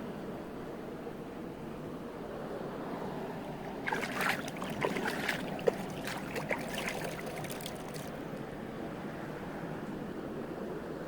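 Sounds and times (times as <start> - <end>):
stream water rushing: 3.4 - 8.6
water splashing and gurgling: 3.5 - 8.4.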